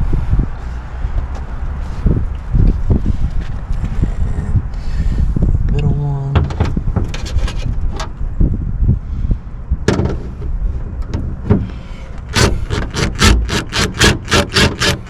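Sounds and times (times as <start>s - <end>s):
hand ratchet strokes: 12.2s - 15.0s.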